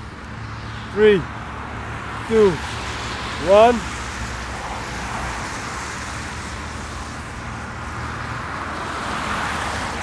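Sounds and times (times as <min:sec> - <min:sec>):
rushing road noise: 0:00.0 - 0:10.0.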